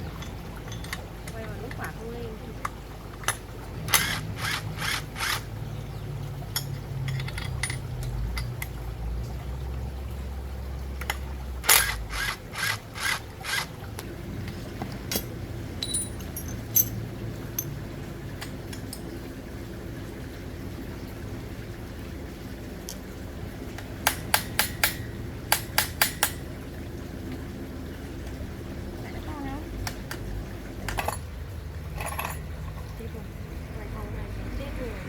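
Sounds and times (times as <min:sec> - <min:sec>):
low steady hum: 0:00.0 - 0:35.0
hand tools scraping and tapping: 0:06.5 - 0:08.7.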